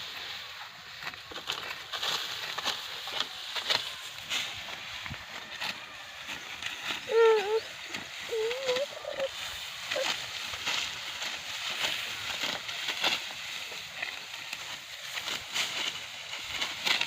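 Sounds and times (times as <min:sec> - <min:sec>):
dry wheat stalks crunching: 0:00.0 - 0:17.0
short wavering calls: 0:07.0 - 0:10.2.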